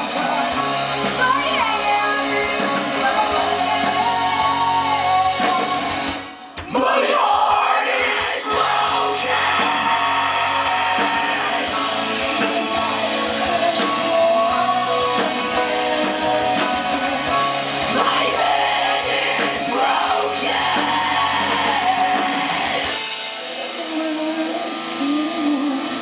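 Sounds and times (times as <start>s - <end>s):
live rock band playing: 0.0s - 26.0s
person singing: 0.0s - 26.0s.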